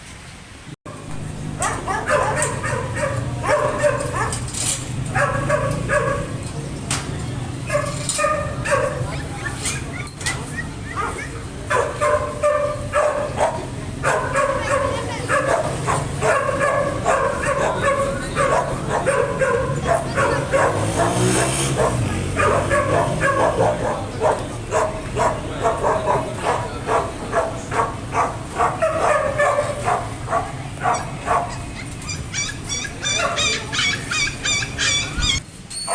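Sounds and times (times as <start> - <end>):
dogs barking aggressively: 0.9 - 6.7, 7.5 - 35.9
high-pitched dog yips: 1.6 - 4.4, 7.7 - 13.1, 30.9 - 35.9.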